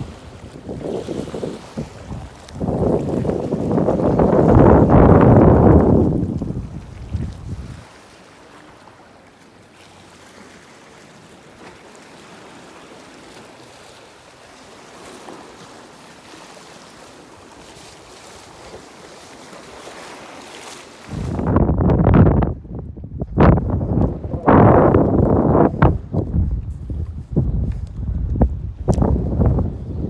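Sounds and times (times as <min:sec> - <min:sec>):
wind buffeting microphone: 0:00.0 - 0:08.0, 0:21.1 - 0:30.0
sea waves washing in: 0:00.0 - 0:30.0.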